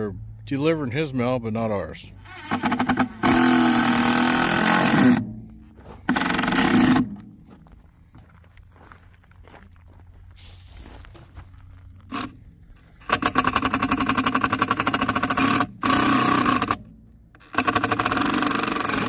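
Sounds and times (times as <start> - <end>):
power driver driving screws into wood: 2.2 - 5.4, 6.0 - 7.4, 12.1 - 19.0.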